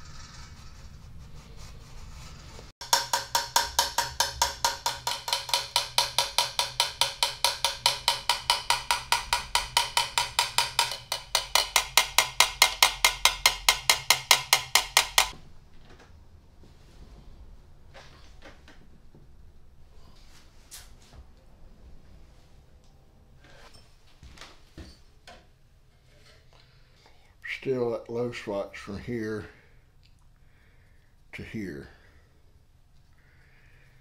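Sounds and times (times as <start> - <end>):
hammer tapping on brass: 2.8 - 15.4.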